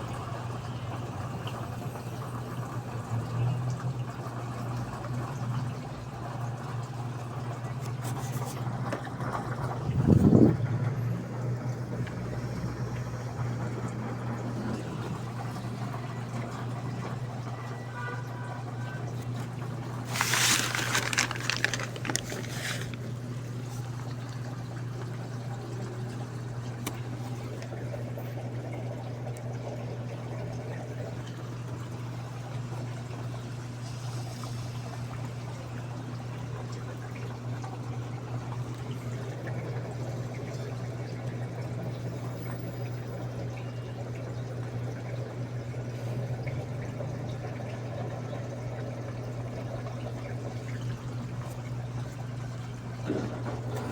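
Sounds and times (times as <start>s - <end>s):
washing machine running: 0.0s - 53.9s
water pouring into drum: 18.5s - 41.8s.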